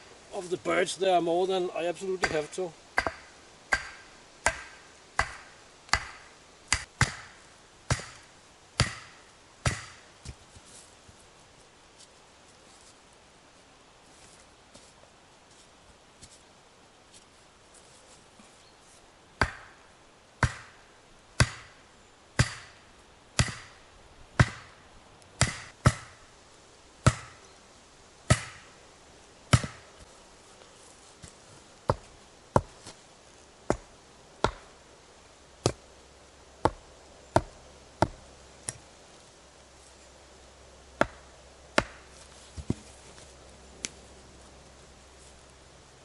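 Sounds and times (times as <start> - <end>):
axe striking wood: 2.2 - 8.2, 8.8 - 10.0, 19.4 - 19.8, 20.4 - 20.8, 21.4 - 21.8, 22.4 - 22.8, 23.4 - 23.8, 24.4 - 24.7, 25.4 - 26.2, 27.1 - 27.4, 28.3 - 28.7, 29.5 - 29.8, 33.7 - 34.7, 41.0 - 41.2, 41.8 - 42.0.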